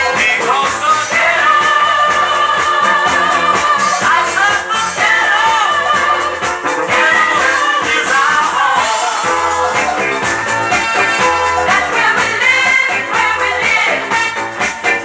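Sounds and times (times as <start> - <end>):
soul song with backing band: 0.0 - 15.0.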